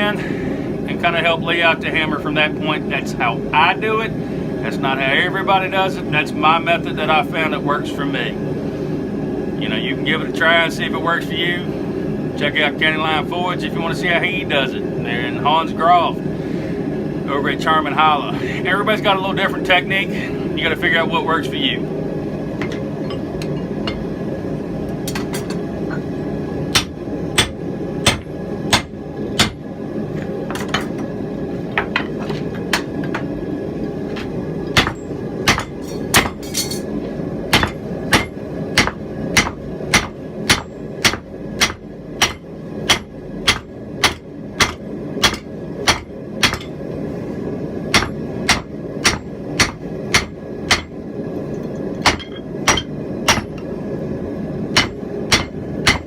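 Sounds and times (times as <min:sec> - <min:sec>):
steady background noise: 0:00.0 - 0:56.0
hammer striking steel on anvil: 0:26.7 - 0:29.6, 0:34.7 - 0:36.9, 0:37.6 - 0:46.8, 0:47.9 - 0:50.9, 0:52.0 - 0:53.6, 0:54.7 - 0:56.0.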